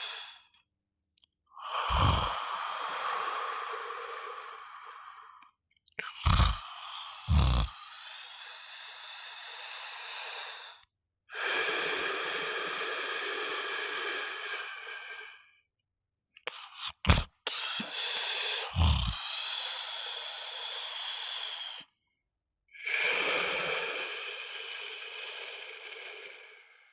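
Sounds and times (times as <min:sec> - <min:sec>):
person snoring: 0:01.6 - 0:05.4, 0:06.0 - 0:10.8, 0:16.5 - 0:21.9, 0:22.8 - 0:26.9
deep snorts: 0:01.8 - 0:02.4, 0:06.2 - 0:06.6, 0:07.2 - 0:07.8, 0:16.9 - 0:18.0, 0:18.6 - 0:19.2.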